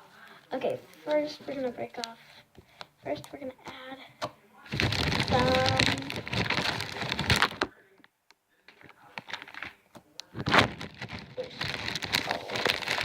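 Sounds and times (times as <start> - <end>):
crinkling: 4.7 - 7.8, 8.7 - 13.0.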